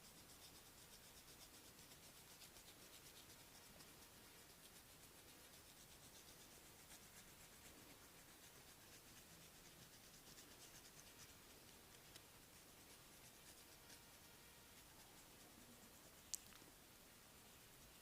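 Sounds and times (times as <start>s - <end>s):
hands rubbing scalp: 1.0s - 16.4s
light ticks: 16.3s - 16.7s.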